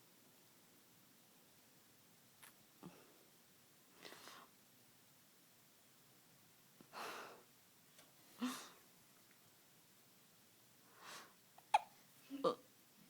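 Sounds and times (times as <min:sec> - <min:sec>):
child hiccup: 0:11.7 - 0:12.6.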